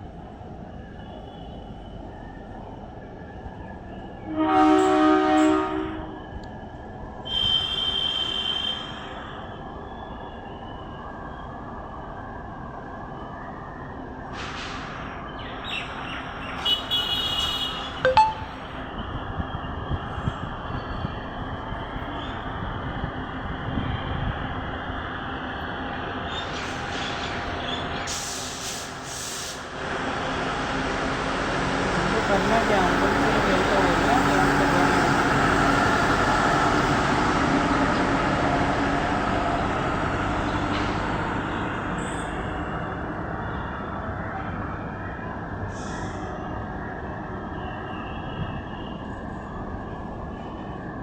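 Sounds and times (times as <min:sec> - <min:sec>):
train horn blasts: 0:04.2 - 0:06.2, 0:07.3 - 0:09.1
train running noise: 0:19.2 - 0:51.0.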